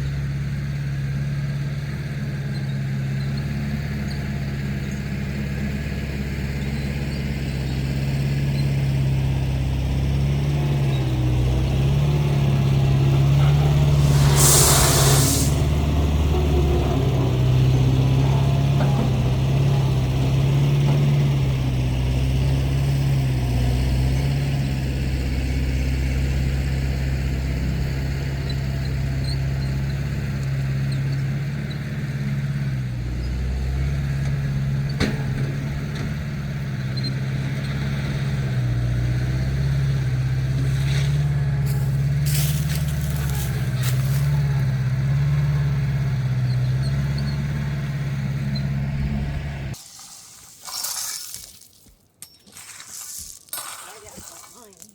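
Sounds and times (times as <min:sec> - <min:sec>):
diesel engine of earthmover: 0:00.0 - 0:49.8
short hisses: 0:13.7 - 0:16.0.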